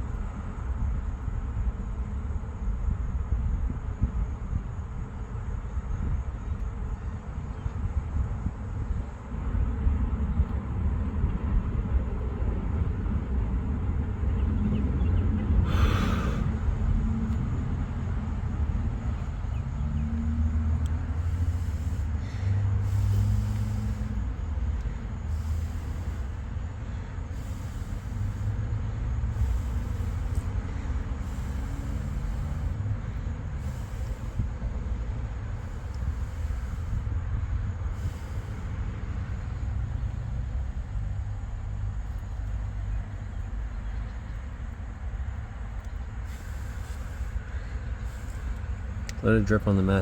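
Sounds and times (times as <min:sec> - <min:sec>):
wind buffeting microphone: 0:02.7 - 0:20.0
brief hiss: 0:21.2 - 0:24.3, 0:25.3 - 0:26.5, 0:27.3 - 0:28.6, 0:29.3 - 0:32.8, 0:33.5 - 0:34.5, 0:37.9 - 0:38.8, 0:46.2 - 0:49.9.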